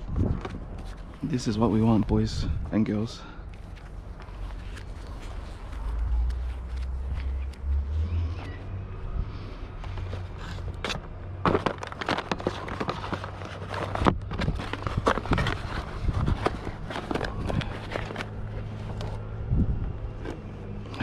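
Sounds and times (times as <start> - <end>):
objects knocking and clattering: 11.4 - 18.2.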